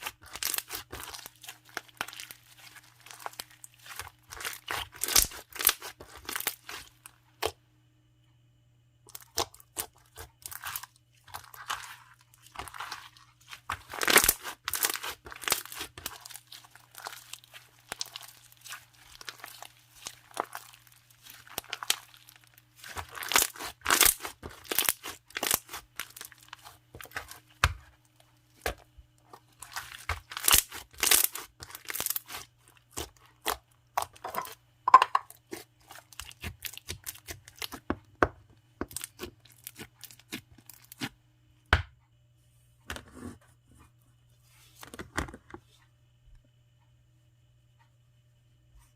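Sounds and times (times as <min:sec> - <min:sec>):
foam slime crackling and popping: 0:00.0 - 0:07.0, 0:09.1 - 0:27.8, 0:29.4 - 0:34.2, 0:38.8 - 0:41.1.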